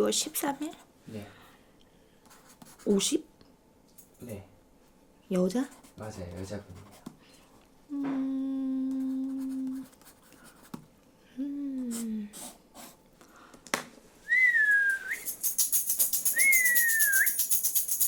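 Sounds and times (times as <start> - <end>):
person humming low note: 7.9 - 9.8
high whistles: 14.2 - 17.9
bells jingling fast: 15.2 - 18.0.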